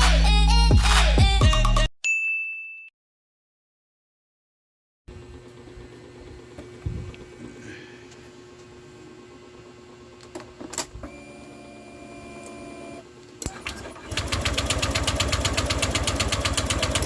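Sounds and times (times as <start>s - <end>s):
steady hum: 5.1s - 10.4s
scooter engine cranking: 13.5s - 17.0s.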